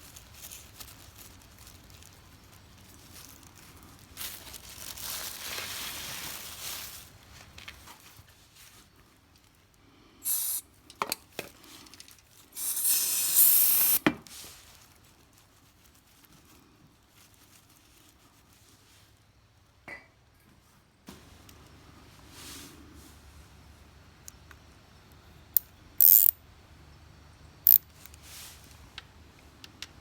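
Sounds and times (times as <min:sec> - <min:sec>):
high hissing bursts: 0:10.2 - 0:10.6, 0:12.6 - 0:14.0.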